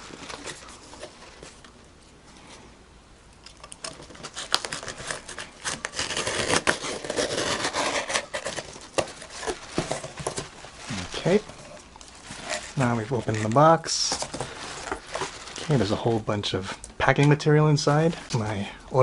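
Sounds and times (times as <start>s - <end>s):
packing tape pulled off cardboard: 3.5s - 16.2s
cardboard box opening and rustling: 3.8s - 16.0s.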